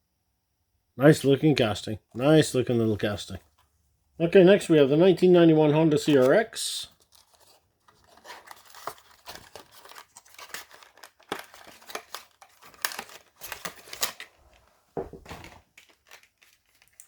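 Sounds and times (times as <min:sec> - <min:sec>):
plastic packaging crinkling: 0:05.9 - 0:17.0.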